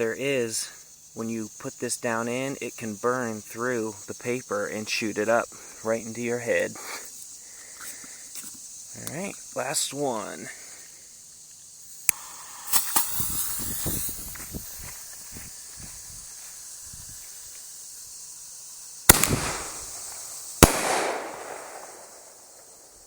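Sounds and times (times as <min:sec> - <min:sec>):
crackling hiss: 0:00.0 - 0:23.0
crickets chirping: 0:00.0 - 0:23.0
firework shell bursting: 0:11.8 - 0:23.0
fuse sputtering: 0:11.9 - 0:18.2.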